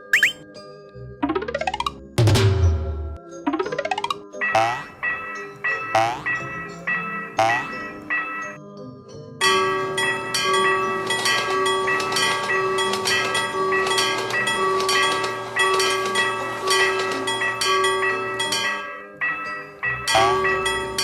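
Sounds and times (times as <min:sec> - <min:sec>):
level crossing bells clanging: 0:03.8 - 0:08.6, 0:09.4 - 0:21.0.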